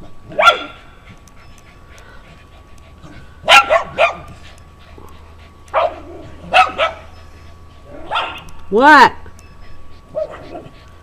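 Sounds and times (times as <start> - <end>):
dogs barking sharply: 0.3 - 0.8, 3.4 - 4.3, 5.7 - 7.1, 7.9 - 8.5.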